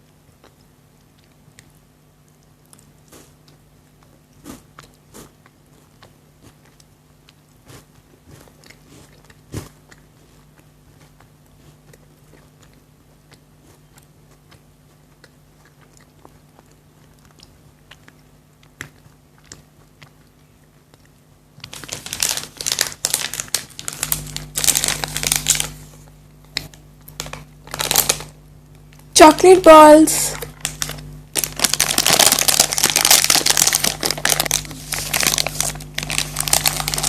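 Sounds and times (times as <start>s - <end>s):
soft chewing with mouth clicks: 0.0s - 22.1s, 23.5s - 27.6s
wrapper crinkling: 21.6s - 26.0s, 27.1s - 28.3s, 29.2s - 37.0s.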